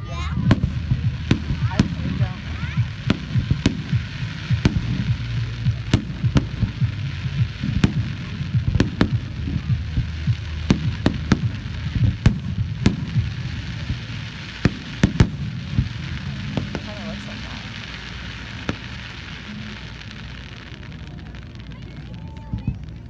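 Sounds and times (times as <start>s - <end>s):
fireworks bangs and pops: 0.0s - 23.0s
low rumble: 0.0s - 23.0s.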